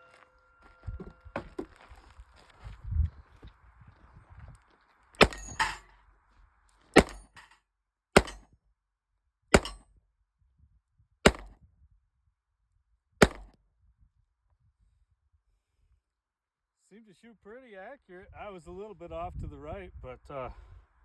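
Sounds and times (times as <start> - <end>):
revolver shots with echo: 5.2 - 5.8, 7.0 - 7.4, 9.6 - 9.8, 11.3 - 11.5, 13.2 - 13.5.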